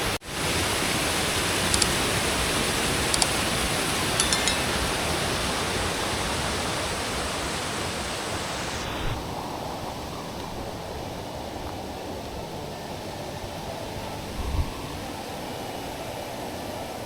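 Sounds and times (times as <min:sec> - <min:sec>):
light ticks: 0:01.7 - 0:02.1, 0:03.1 - 0:03.6, 0:04.2 - 0:04.8.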